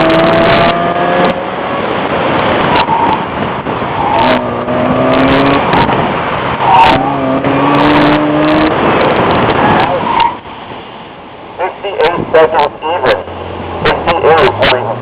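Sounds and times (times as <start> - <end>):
car engine accelerating: 0.0 - 10.4, 13.1 - 15.0.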